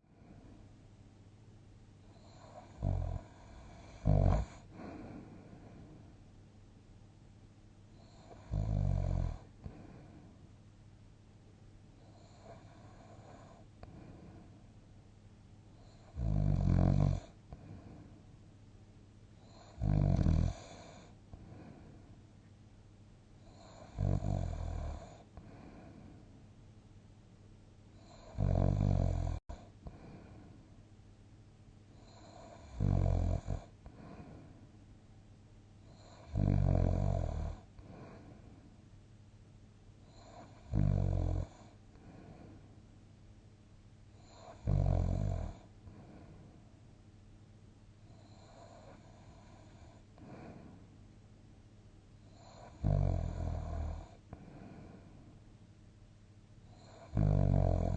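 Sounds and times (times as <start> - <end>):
quiet breathing: 0.0 - 6.4, 7.8 - 10.7, 11.9 - 18.7, 19.3 - 26.7, 27.9 - 31.2, 31.8 - 35.2, 35.8 - 38.9, 40.0 - 43.0, 44.0 - 51.1, 52.2 - 55.7, 56.5 - 57.9
person snoring: 2.1 - 5.9, 8.0 - 10.1, 15.8 - 17.9, 19.4 - 21.8, 23.5 - 26.0, 28.0 - 30.4, 32.0 - 34.3, 35.9 - 38.3, 40.1 - 42.6, 44.2 - 46.3, 52.2 - 55.0, 56.7 - 57.9.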